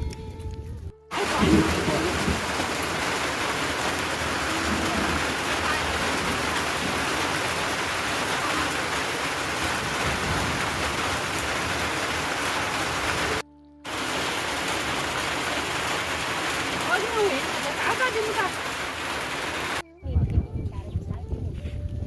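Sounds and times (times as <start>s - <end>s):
steady rain hissing: 1.1s - 19.8s.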